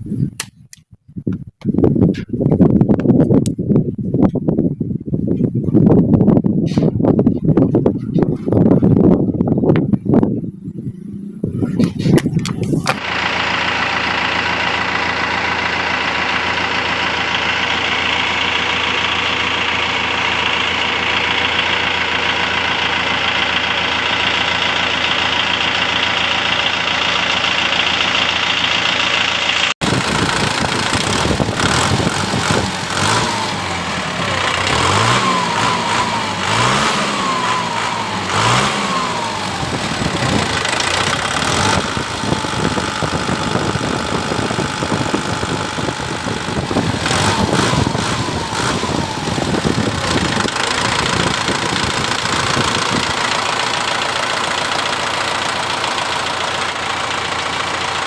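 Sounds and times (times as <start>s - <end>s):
tractor diesel engine idling: 7.2s - 58.0s
engine revving: 9.9s - 58.0s.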